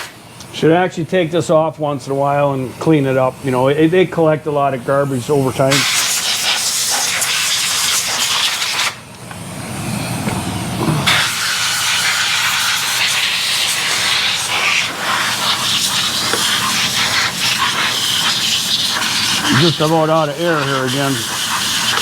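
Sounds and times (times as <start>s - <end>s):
compressed air hissing: 5.0s - 9.0s, 10.8s - 22.0s.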